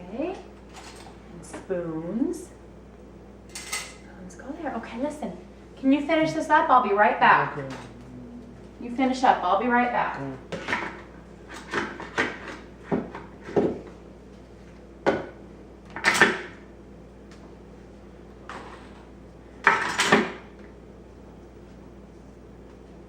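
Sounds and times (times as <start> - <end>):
metal cutlery clattering: 3.5 - 4.0.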